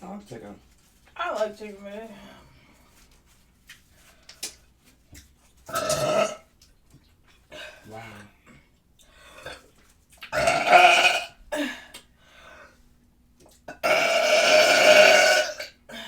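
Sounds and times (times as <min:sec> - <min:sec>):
person burping loudly: 0:05.7 - 0:06.5, 0:10.3 - 0:11.4, 0:13.7 - 0:15.9.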